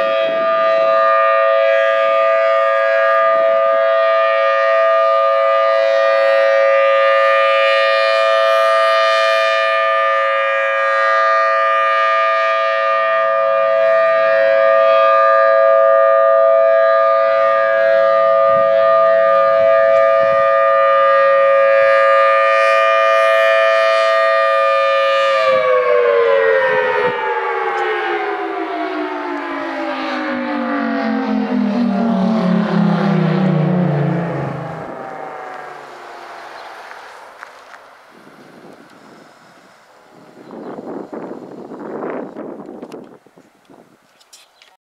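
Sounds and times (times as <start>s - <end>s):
tornado siren: 0.0s - 44.0s.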